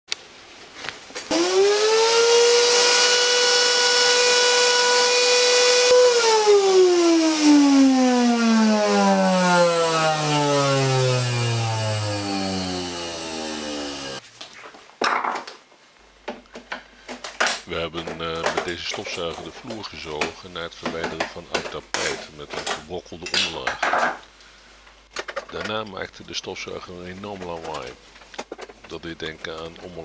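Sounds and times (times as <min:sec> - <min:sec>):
vacuum cleaner motor whine: 0:01.3 - 0:14.2.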